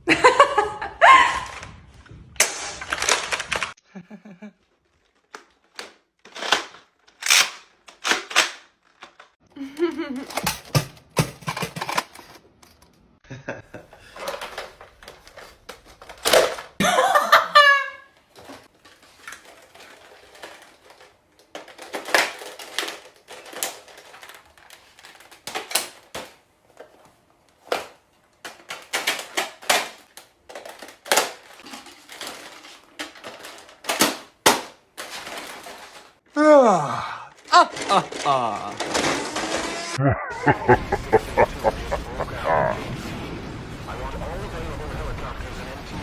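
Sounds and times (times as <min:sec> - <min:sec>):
person yelling: 0:36.4 - 0:38.8.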